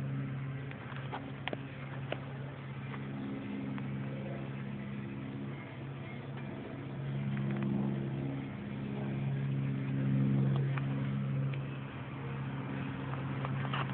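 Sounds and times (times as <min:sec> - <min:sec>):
car engine droning hum: 0:00.0 - 0:13.9.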